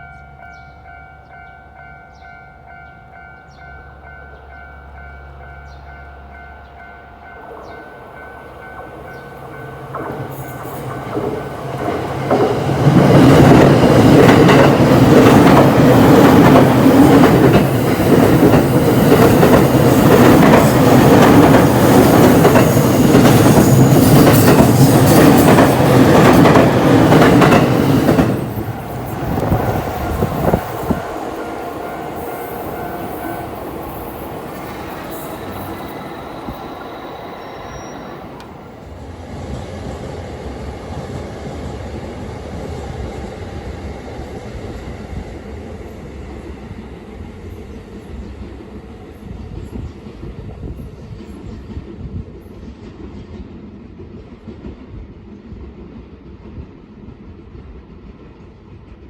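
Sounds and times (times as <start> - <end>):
train passing at speed: 0.0 - 59.0
level-crossing alarm bell: 27.4 - 38.8.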